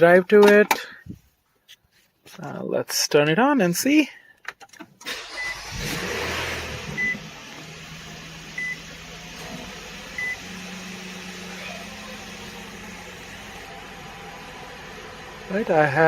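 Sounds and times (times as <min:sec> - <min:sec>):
vehicle engine starting and idling: 0:05.0 - 0:16.0.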